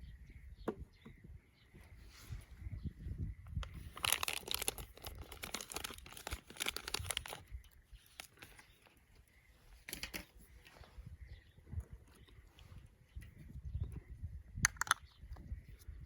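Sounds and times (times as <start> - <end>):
dry tinder crackling by hand: 3.9 - 9.2.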